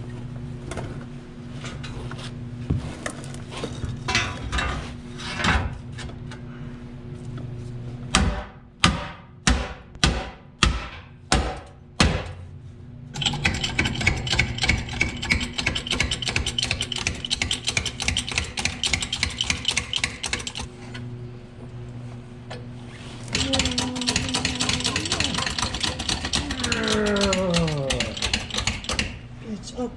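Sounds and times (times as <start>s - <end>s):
constant low hum: 0.0s - 29.9s
hammer striking steel: 8.1s - 12.4s
fast mechanical rattle: 13.2s - 20.7s, 23.3s - 29.2s.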